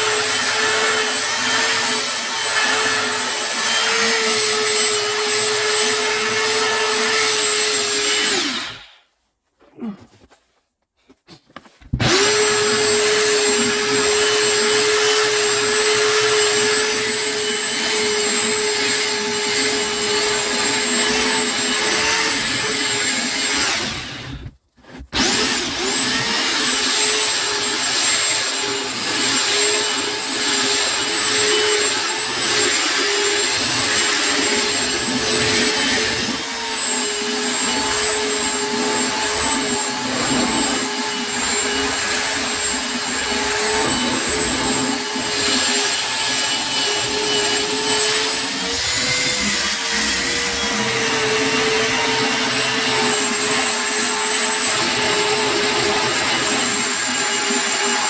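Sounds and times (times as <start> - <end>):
electric sander whining: 12.0 - 24.5, 25.2 - 58.0.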